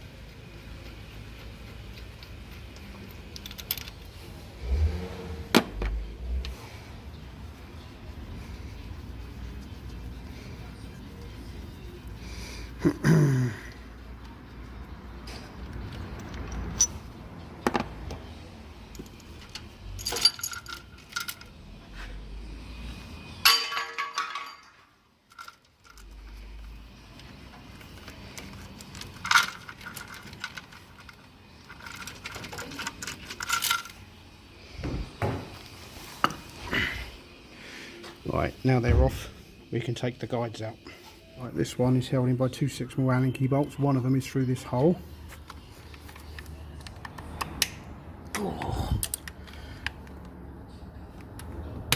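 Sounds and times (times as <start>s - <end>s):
metal bolts and tools clinking: 2.2s - 4.2s, 15.6s - 17.1s, 18.9s - 21.6s, 23.4s - 34.1s.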